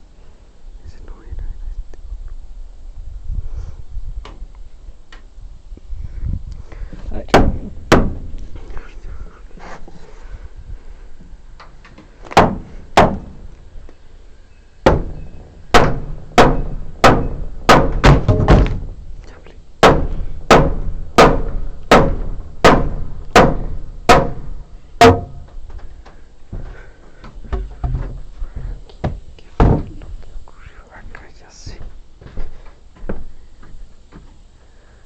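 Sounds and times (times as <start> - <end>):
hammer striking wood: 7.3 - 8.3, 12.3 - 13.4, 14.8 - 18.8, 19.8 - 25.6.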